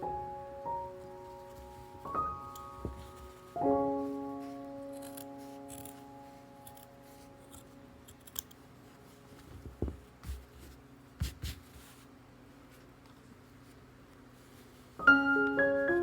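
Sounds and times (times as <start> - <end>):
held piano note: 15.0 - 16.0.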